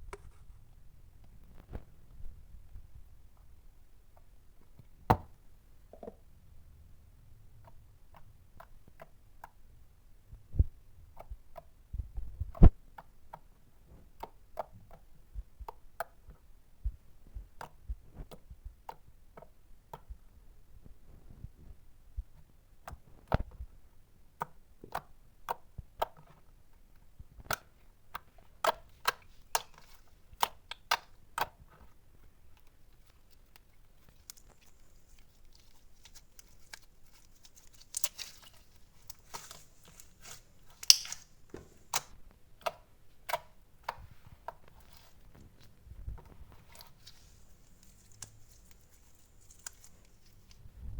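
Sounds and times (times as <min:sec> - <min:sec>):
slime clicking and popping: 0:40.7 - 0:41.3.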